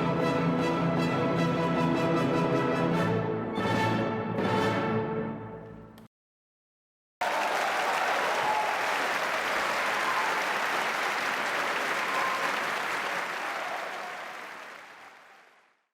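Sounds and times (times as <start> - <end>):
audience applauding: 7.2 - 15.9.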